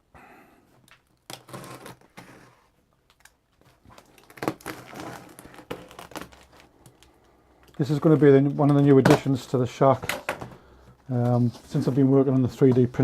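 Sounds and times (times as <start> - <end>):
packaging rustling and crinkling: 1.0 - 7.2.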